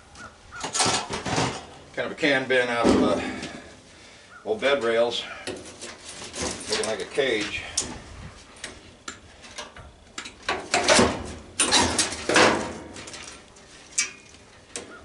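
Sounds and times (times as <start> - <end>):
sheet metal scraping clatter: 0.6 - 1.8, 5.5 - 8.0, 10.5 - 14.2.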